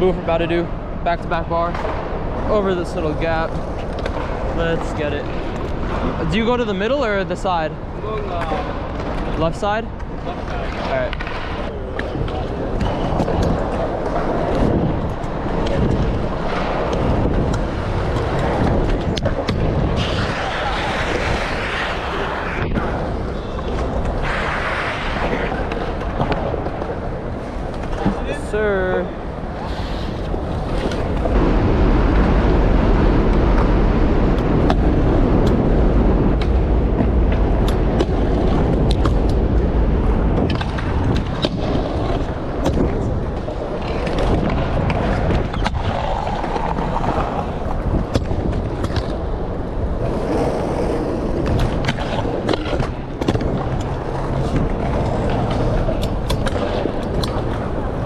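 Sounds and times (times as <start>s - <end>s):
scooter wheels rolling: 10.0s - 32.5s, 36.4s - 58.0s
heavy low rumble: 14.7s - 41.8s, 44.6s - 58.0s.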